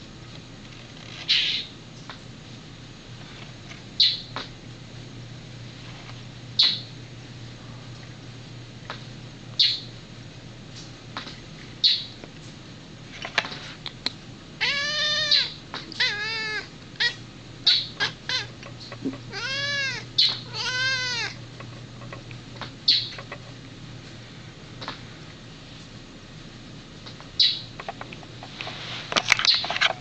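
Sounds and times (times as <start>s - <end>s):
cat meowing: 14.6s - 18.5s, 19.1s - 21.4s.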